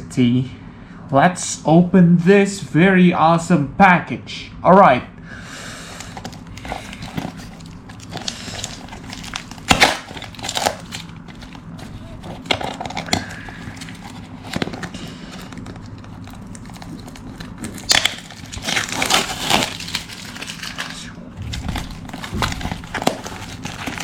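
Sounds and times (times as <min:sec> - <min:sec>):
packaging crinkling and rustling: 0:05.9 - 0:24.0
packaging ripping: 0:05.9 - 0:24.0.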